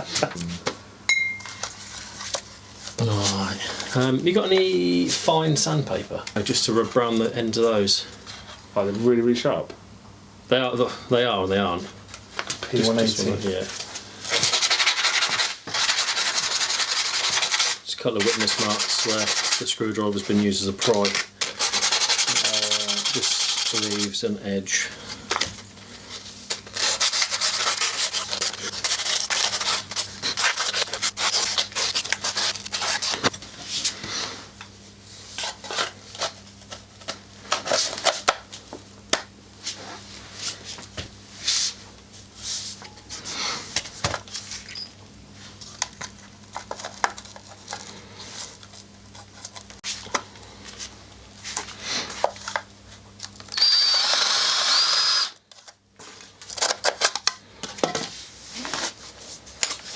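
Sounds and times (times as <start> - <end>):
sandpaper rasping on metal: 14.4 - 19.8, 21.1 - 24.2, 26.7 - 33.1.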